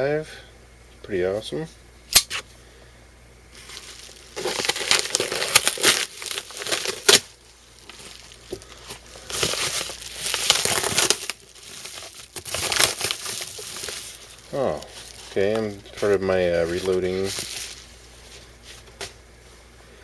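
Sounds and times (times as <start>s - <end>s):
sharp click: 2.1s - 2.4s
packaging crinkling and tearing: 3.6s - 18.0s.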